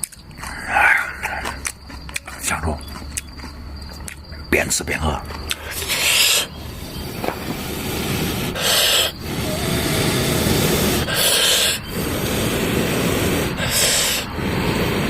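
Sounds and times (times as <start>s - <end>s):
rustling wood fire: 5.4s - 15.0s
hissing puffs of breath: 5.5s - 15.0s.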